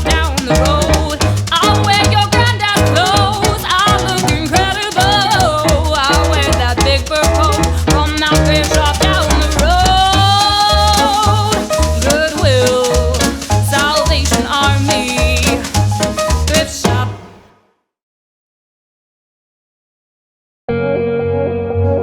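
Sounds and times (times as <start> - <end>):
bass beat: 0.0 - 17.1
shaker-like percussion: 0.0 - 17.1
pop song with vocals: 0.0 - 17.3.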